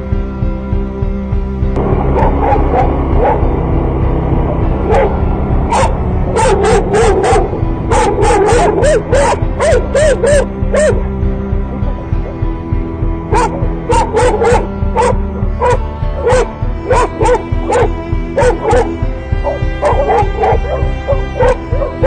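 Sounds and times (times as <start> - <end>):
background music with steady beat: 0.0 - 22.0
dog barking: 2.1 - 3.5, 4.9 - 11.0, 13.3 - 22.0.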